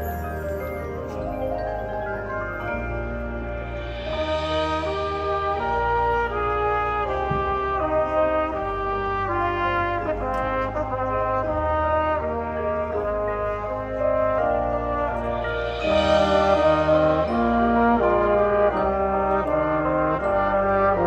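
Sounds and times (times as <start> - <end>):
steady low bass: 0.0 - 21.0
brass section playing chords: 0.9 - 21.0.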